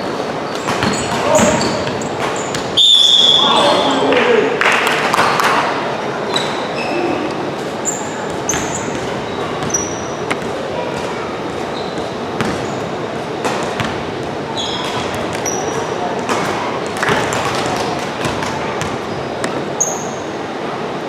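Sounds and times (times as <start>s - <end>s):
shoe squeaks: 0.0s - 3.9s, 6.3s - 10.4s, 11.1s - 13.0s, 14.5s - 15.9s, 19.0s - 20.4s
murmur echoing in hall: 0.0s - 21.0s
basketball bouncing on court: 0.5s - 2.8s, 8.2s - 19.6s.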